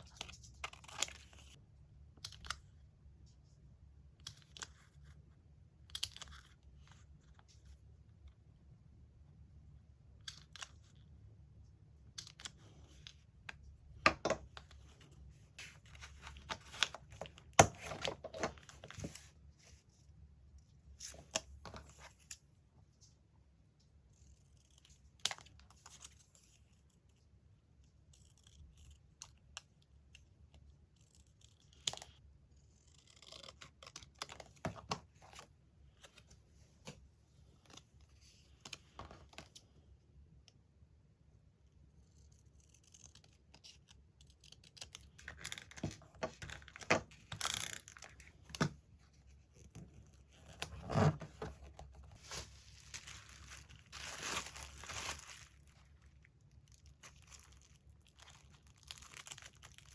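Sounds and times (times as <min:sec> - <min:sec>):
paper rustling and tearing: 0:50.7 - 0:56.0.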